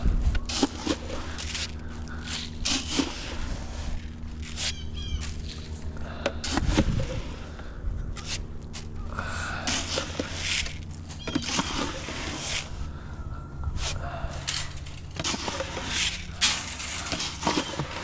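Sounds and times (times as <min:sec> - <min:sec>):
steady low hum: 0:00.0 - 0:18.0
chickens scratching: 0:00.4 - 0:06.8, 0:09.6 - 0:12.8, 0:13.8 - 0:18.0
chickens calling: 0:04.5 - 0:05.7, 0:11.1 - 0:13.4
chirping notes: 0:04.6 - 0:05.6, 0:12.8 - 0:14.5.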